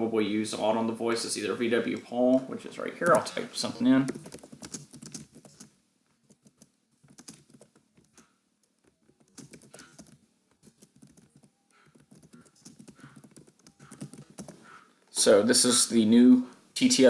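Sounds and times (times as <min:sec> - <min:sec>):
faint keyboard typing: 0:02.8 - 0:15.2.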